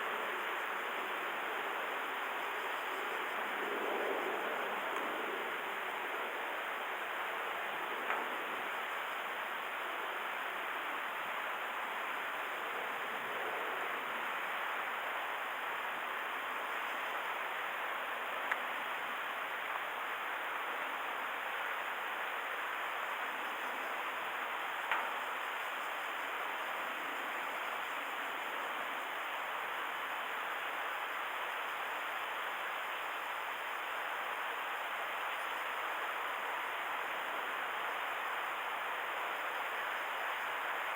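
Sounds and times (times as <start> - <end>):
wind: 0.0 - 40.9
faint clicks: 8.0 - 8.3, 24.8 - 25.4.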